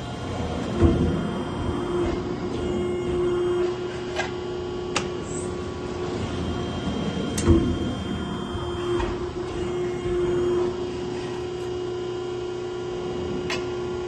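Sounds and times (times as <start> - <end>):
hydraulic pump motor hum: 0.0 - 14.0
heavy machine clunk: 0.4 - 3.3, 7.3 - 10.4.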